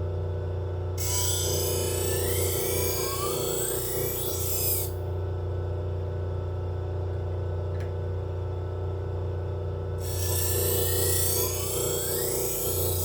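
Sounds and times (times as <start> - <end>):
blade rasping on grinding wheel: 1.0 - 5.0, 10.0 - 13.0
sharpening machine motor humming: 1.0 - 5.0, 10.0 - 13.0.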